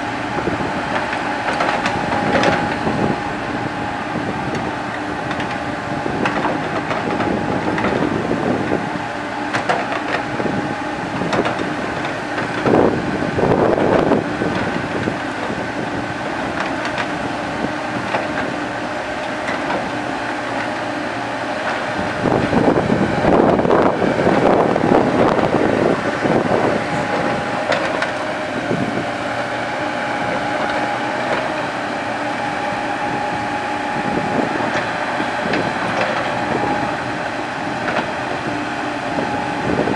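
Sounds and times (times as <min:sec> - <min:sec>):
excavator diesel engine running: 0:00.0 - 0:39.9
clanks and knocks: 0:11.2 - 0:12.8, 0:27.0 - 0:28.2.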